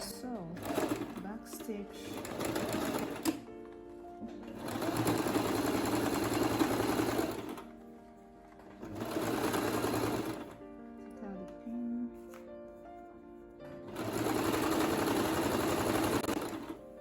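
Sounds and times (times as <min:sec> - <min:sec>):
sewing machine running: 0:00.6 - 0:03.4, 0:04.4 - 0:07.6, 0:08.8 - 0:10.6, 0:13.9 - 0:16.8.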